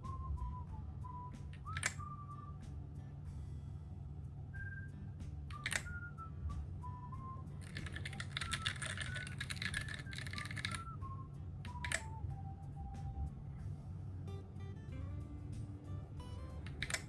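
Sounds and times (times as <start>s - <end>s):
background music with high melody: 0.0s - 17.0s
mechanical keyboard typing: 1.6s - 2.0s, 5.5s - 5.9s, 7.6s - 10.8s, 11.7s - 12.1s, 16.7s - 17.0s.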